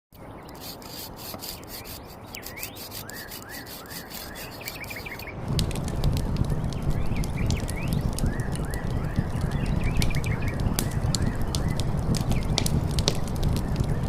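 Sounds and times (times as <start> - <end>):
rising bird chirps: 0.2 - 5.4
crackling and rustling: 0.4 - 14.0.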